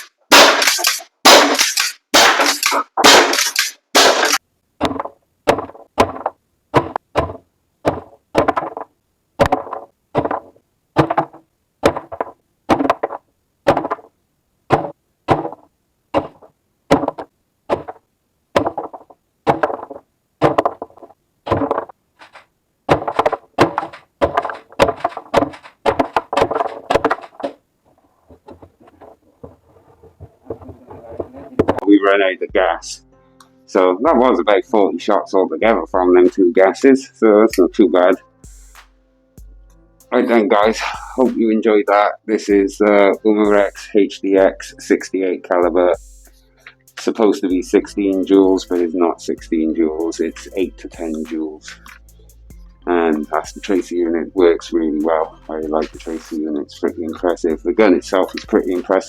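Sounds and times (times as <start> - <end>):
air shotgun shots: 0.0 - 4.4.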